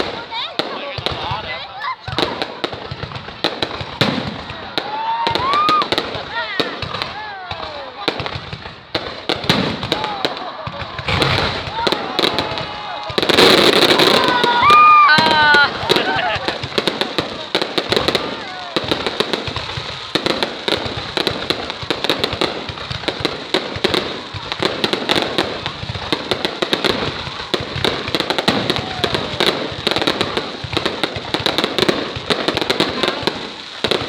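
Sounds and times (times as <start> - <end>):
fireworks bangs and crackles: 0.0 - 34.0.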